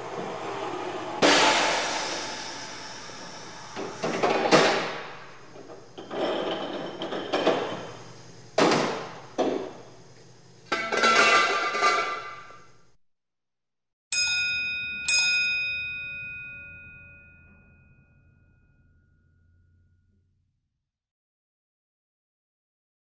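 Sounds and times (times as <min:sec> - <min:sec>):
ringing metal clanks and blows: 0:14.2 - 0:20.0.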